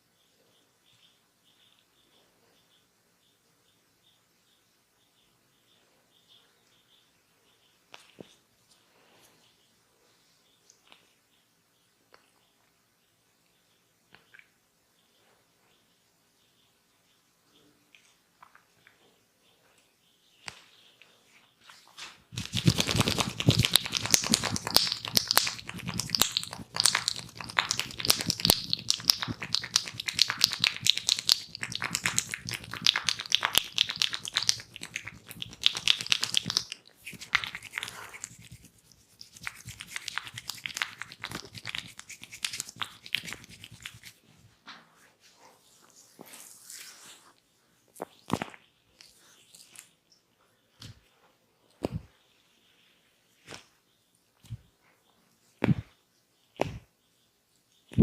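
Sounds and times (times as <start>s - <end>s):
crackling and scratching on hair: 21.6s - 44.2s, 45.2s - 50.0s.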